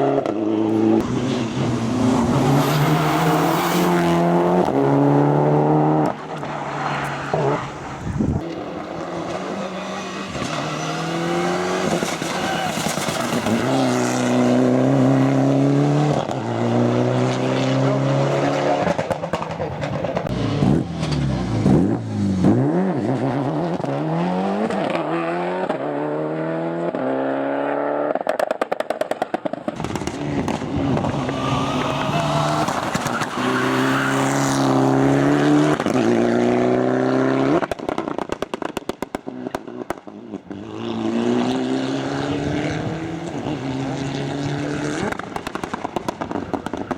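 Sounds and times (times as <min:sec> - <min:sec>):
turbocharged engine revving hard: 0:09.0 - 0:19.0, 0:29.9 - 0:37.6, 0:40.6 - 0:45.2
exhaust pops and cracks: 0:28.2 - 0:33.4, 0:37.6 - 0:40.1, 0:45.0 - 0:46.9.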